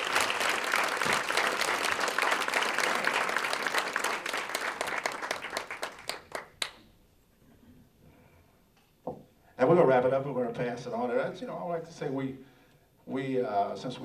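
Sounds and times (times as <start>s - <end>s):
audience applauding: 0.0s - 6.8s.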